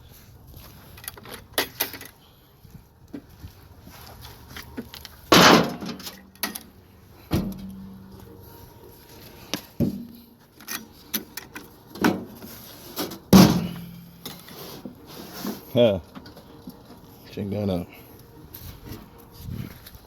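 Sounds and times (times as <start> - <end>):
metal knocks and clanks: 13.3 - 14.4.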